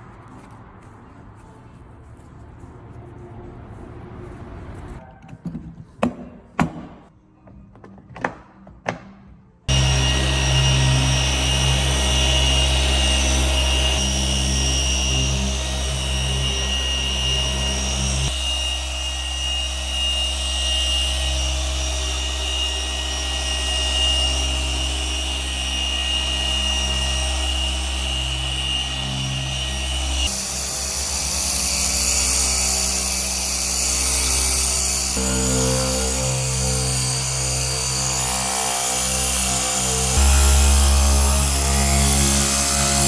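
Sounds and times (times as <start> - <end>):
electric polishing machine whining: 9.7 - 43.0.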